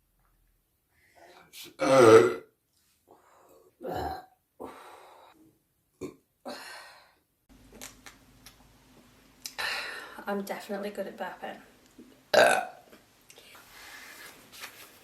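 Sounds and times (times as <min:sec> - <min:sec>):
woman burping: 0:01.8 - 0:02.5, 0:03.8 - 0:04.4, 0:12.3 - 0:12.8.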